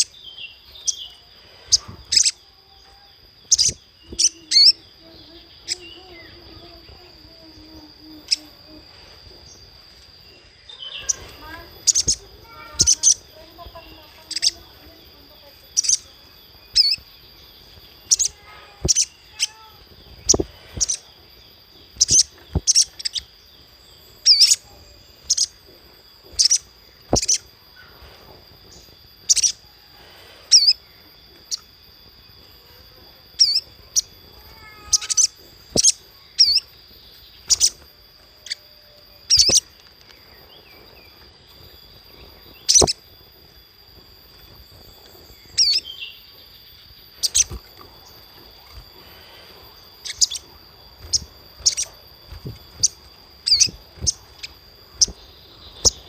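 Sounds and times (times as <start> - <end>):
bird chirping: 0.0 - 56.0
steady high-pitched tone: 0.0 - 56.0.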